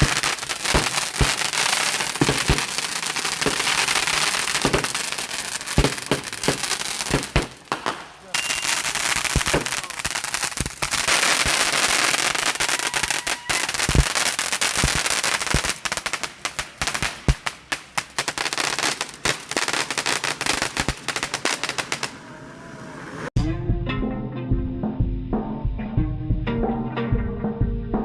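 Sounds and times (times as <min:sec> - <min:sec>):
fireworks crackling and popping: 0:00.0 - 0:22.3.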